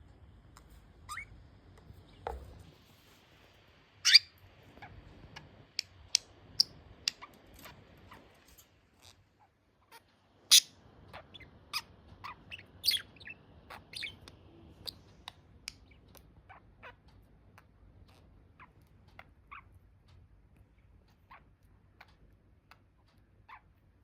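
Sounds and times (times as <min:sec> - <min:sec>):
budgerigars chirping: 0:04.0 - 0:08.3, 0:10.5 - 0:17.0.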